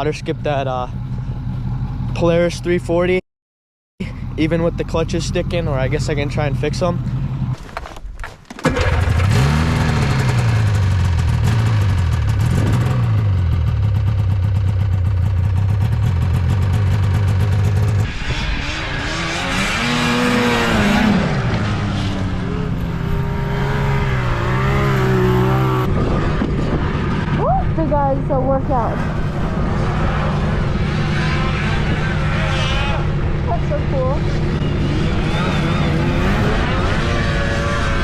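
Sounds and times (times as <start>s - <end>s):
snowmobile engine revving: 8.6s - 14.1s, 15.5s - 38.0s.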